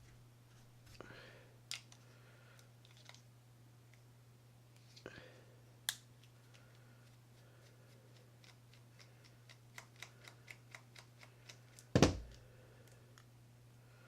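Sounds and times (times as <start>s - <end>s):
loud knock: 12.0s - 12.3s.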